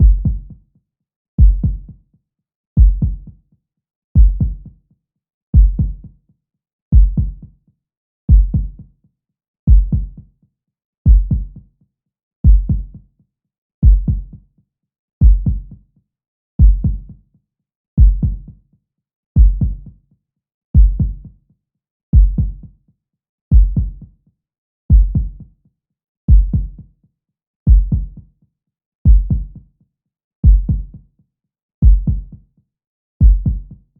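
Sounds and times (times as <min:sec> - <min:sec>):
heartbeat thumps: 0:00.0 - 0:00.5, 0:01.4 - 0:01.9, 0:02.8 - 0:03.3, 0:04.2 - 0:04.6, 0:05.6 - 0:06.0, 0:07.0 - 0:07.4, 0:08.3 - 0:08.8, 0:09.7 - 0:10.2, 0:11.1 - 0:11.5, 0:12.5 - 0:12.9, 0:13.8 - 0:14.3, 0:15.2 - 0:15.7, 0:16.6 - 0:17.0, 0:18.0 - 0:18.4, 0:19.4 - 0:19.8, 0:20.8 - 0:21.2, 0:22.2 - 0:22.6, 0:23.5 - 0:24.0, 0:24.9 - 0:25.4, 0:26.3 - 0:26.8, 0:27.7 - 0:28.2, 0:29.1 - 0:29.6, 0:30.4 - 0:30.9, 0:31.8 - 0:32.3, 0:33.2 - 0:33.7.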